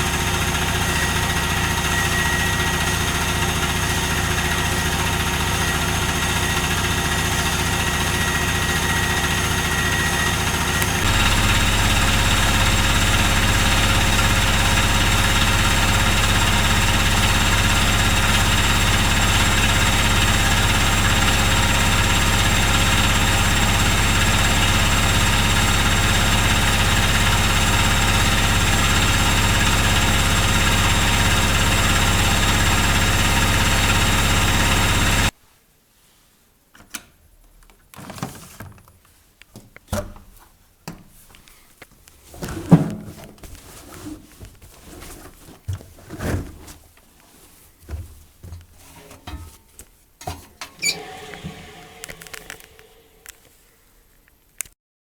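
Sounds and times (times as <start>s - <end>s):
washing machine spinning: 0.0s - 35.4s, 50.6s - 53.4s.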